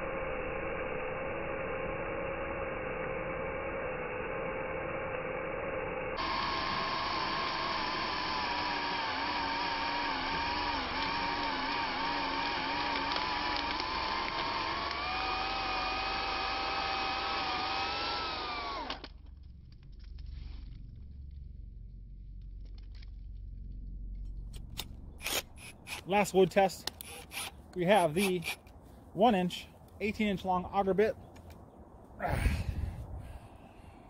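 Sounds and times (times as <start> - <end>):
drill boring into wood: 6.2 - 19.1, 25.2 - 26.1, 26.9 - 28.6.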